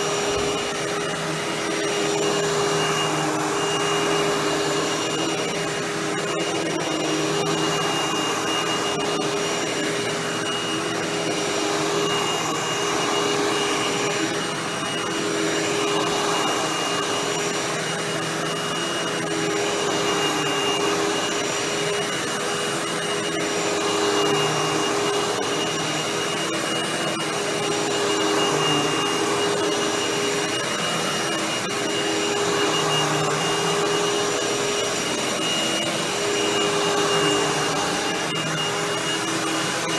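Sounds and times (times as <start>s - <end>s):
vacuum cleaner motor whine: 0.0s - 39.9s.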